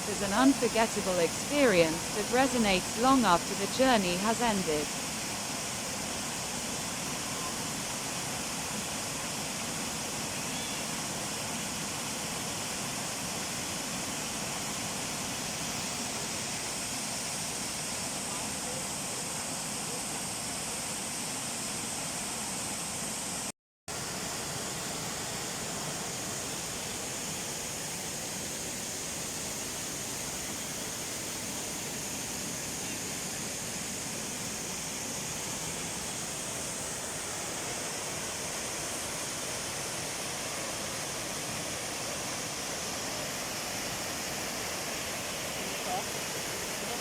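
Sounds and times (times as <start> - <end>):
waterfall rushing: 24.0 - 47.0.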